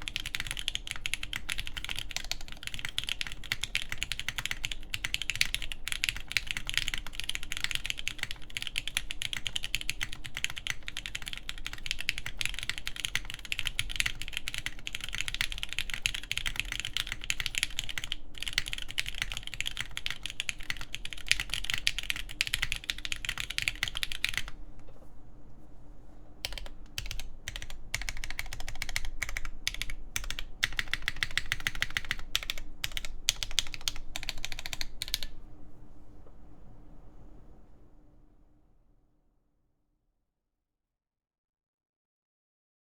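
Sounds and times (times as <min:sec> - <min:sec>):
fast typing on mechanical keyboard: 0:00.0 - 0:24.6, 0:26.4 - 0:35.4.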